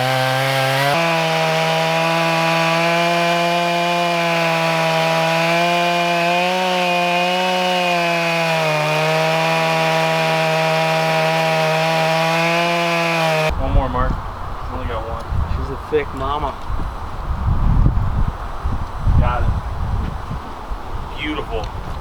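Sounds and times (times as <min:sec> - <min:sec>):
chainsaw cutting log: 0:00.0 - 0:13.5.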